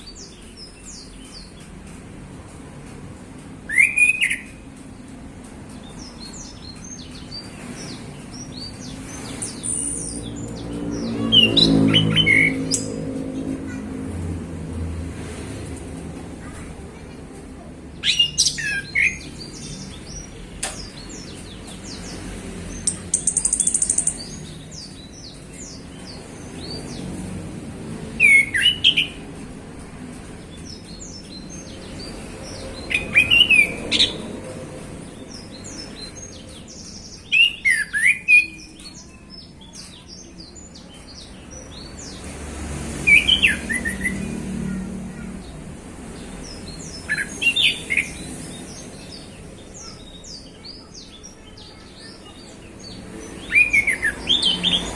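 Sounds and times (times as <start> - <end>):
bird twittering: 22.8 - 26.1.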